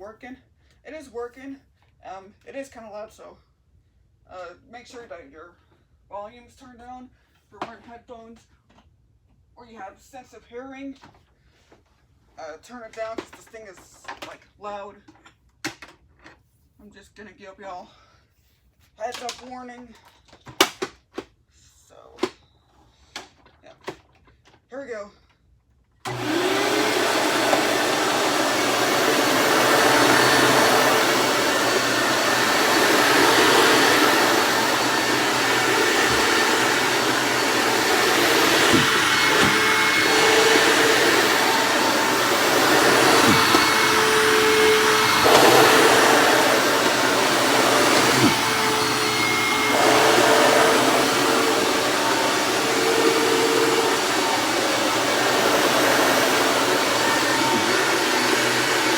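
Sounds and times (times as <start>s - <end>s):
vacuum cleaner whine: 26.1s - 58.9s.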